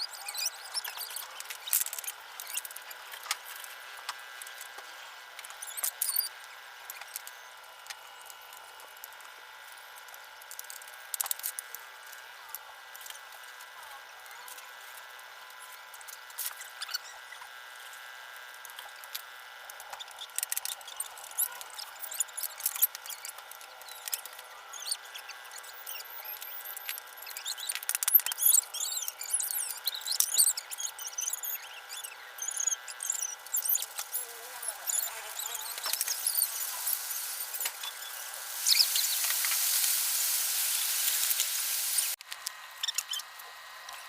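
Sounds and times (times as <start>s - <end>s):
squeaky scrapes: 19.9s - 42.2s.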